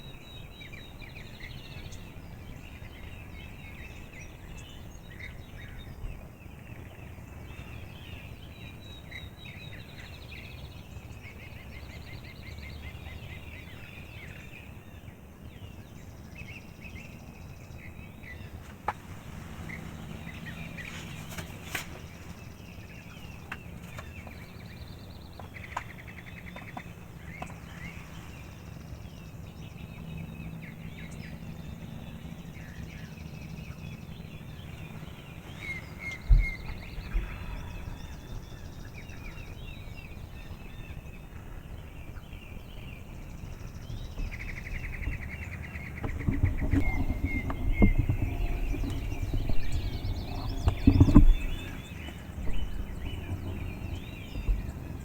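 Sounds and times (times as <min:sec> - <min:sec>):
songbirds chirping and trilling: 0:00.0 - 0:55.0
low rumbling knocks and bumps: 0:34.1 - 0:55.0.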